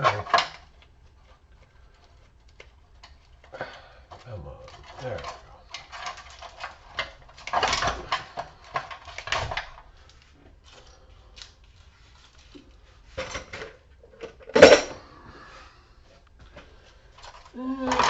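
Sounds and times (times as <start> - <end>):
metal parts clanking and scraping: 4.7 - 9.7, 13.2 - 15.1.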